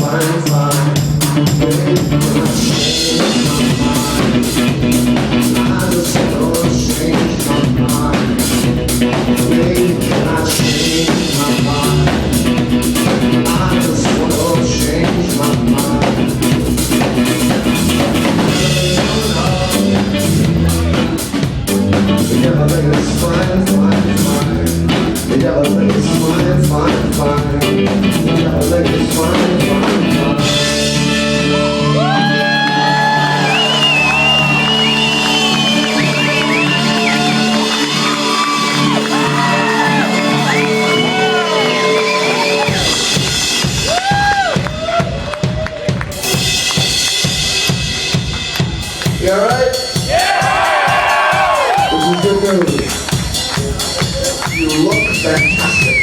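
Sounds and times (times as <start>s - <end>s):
person singing: 0.0s - 43.2s
live band playing: 0.0s - 56.0s
crowd whooping: 31.4s - 46.9s, 50.0s - 56.0s.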